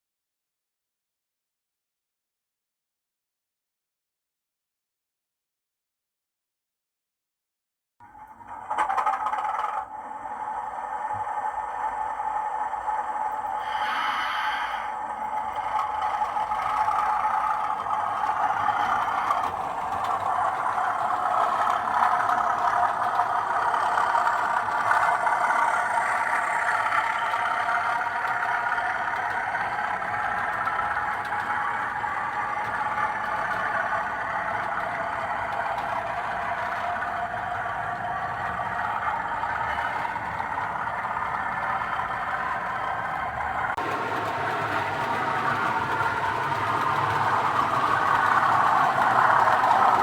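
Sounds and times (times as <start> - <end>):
model train whirring on track: 8.0 - 50.0.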